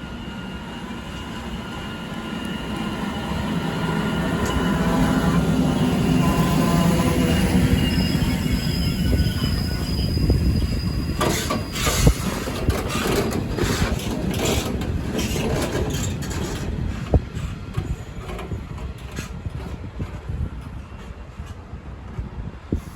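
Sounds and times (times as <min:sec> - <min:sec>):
high wheel squeal: 0:00.0 - 0:19.4
diesel locomotive rumbling: 0:00.0 - 0:22.9
wheels clattering over rail joints: 0:11.1 - 0:21.8.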